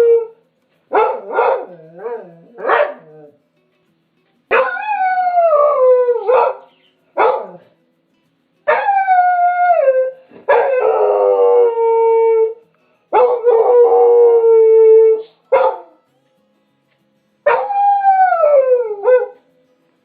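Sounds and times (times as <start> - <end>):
dog yelp: 0.9 - 3.2, 6.2 - 7.6, 15.2 - 15.9
dog howling: 4.5 - 6.6, 8.7 - 12.6, 13.2 - 15.9, 17.5 - 19.4.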